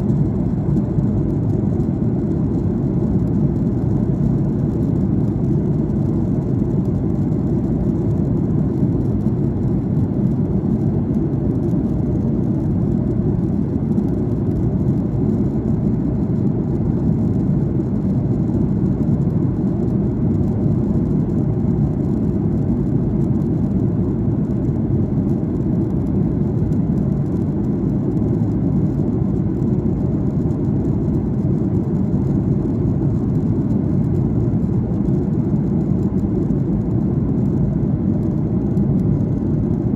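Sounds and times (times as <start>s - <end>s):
airliner cabin rumble: 0.0s - 39.9s.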